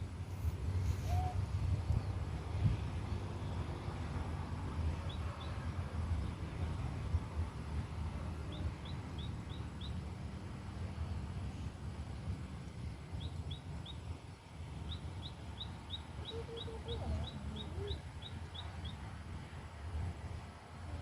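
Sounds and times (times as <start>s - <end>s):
steady low rumble: 0.0s - 21.0s
lower short bird calls: 0.8s - 2.1s
small bird chirping: 8.5s - 10.0s, 13.2s - 14.1s, 14.8s - 19.1s.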